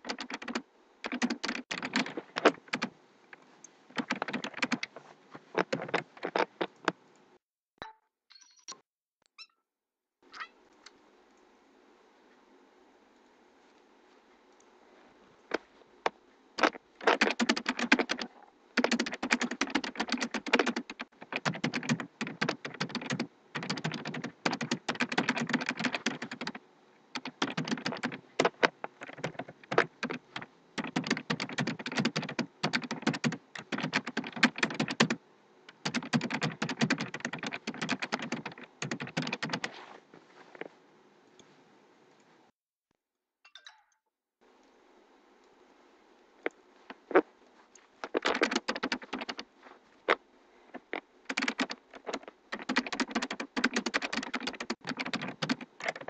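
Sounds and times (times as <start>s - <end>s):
typing on computer keyboard: 0.0s - 2.9s, 4.0s - 4.9s, 5.6s - 6.5s, 16.6s - 26.6s, 27.2s - 39.7s, 48.1s - 49.4s, 51.3s - 56.0s.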